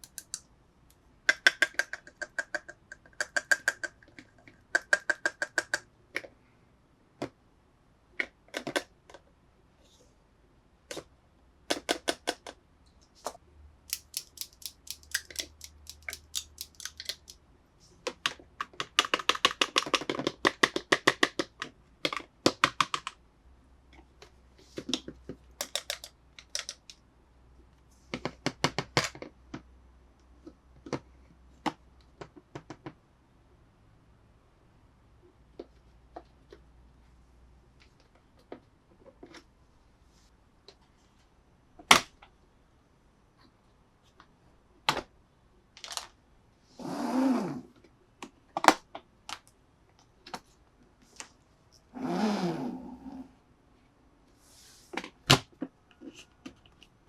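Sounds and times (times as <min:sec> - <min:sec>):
plastic toy pieces clicking: 0:00.0 - 0:00.4, 0:13.9 - 0:17.4, 0:18.3 - 0:23.2, 0:25.6 - 0:27.0.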